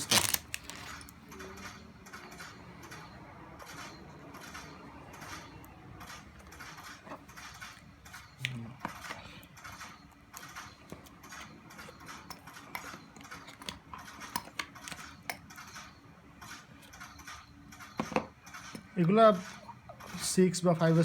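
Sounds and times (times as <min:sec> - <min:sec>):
packaging clicks and rustles: 0:00.0 - 0:01.3.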